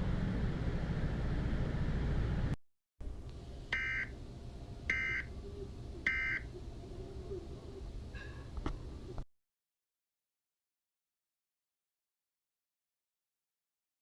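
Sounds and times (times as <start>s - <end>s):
short electronic beeps: 3.8s - 4.1s, 4.9s - 5.3s, 6.1s - 6.5s.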